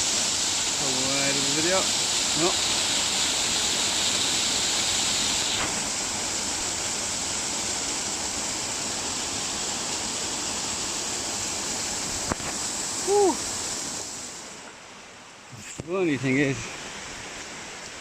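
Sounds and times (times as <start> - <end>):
water rushing from waterfall: 0.0 - 18.0
voice-like sound: 13.0 - 13.4.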